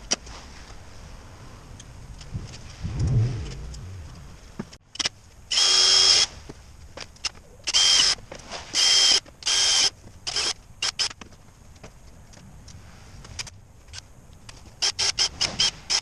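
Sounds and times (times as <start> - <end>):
power drill whirring: 5.5 - 6.3, 8.8 - 11.1.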